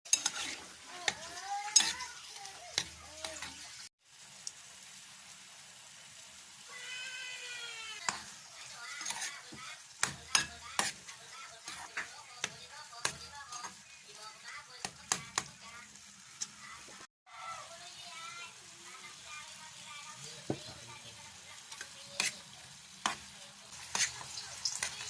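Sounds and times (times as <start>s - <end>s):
utensil scraping a pan: 0.1s - 3.6s, 8.0s - 13.8s, 21.7s - 25.0s
liver sizzling in a pan: 0.1s - 25.0s.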